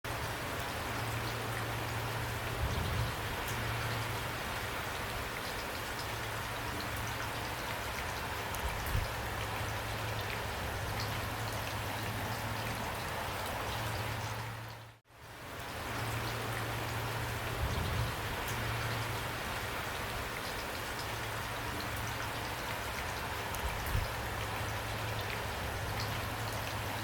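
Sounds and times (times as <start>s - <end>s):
heavy rain pouring: 0.1s - 27.0s.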